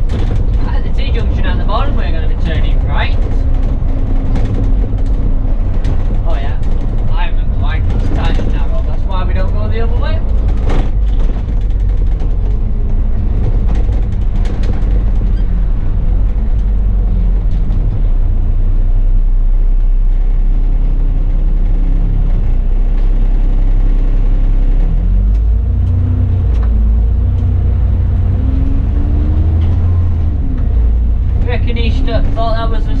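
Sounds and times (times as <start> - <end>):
light knocks and rattles: 0.0 - 18.4
bus engine rumbling: 0.0 - 33.0.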